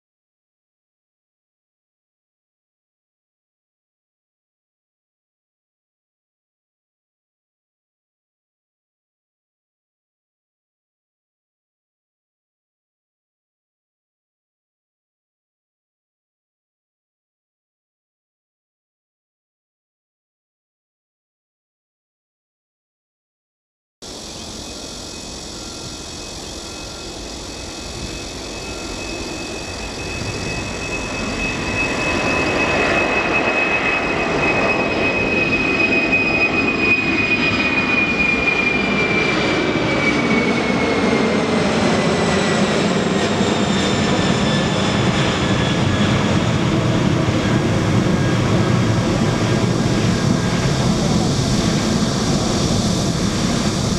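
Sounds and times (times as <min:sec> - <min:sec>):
high engine whine: 0:24.1 - 0:53.9
jet engines roaring: 0:24.1 - 0:53.9.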